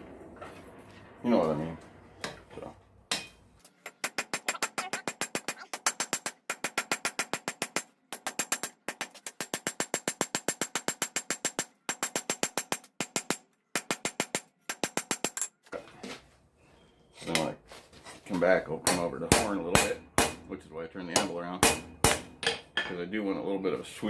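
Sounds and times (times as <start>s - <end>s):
hammer striking steel on anvil: 3.1s - 8.7s, 18.8s - 20.5s, 21.1s - 23.0s.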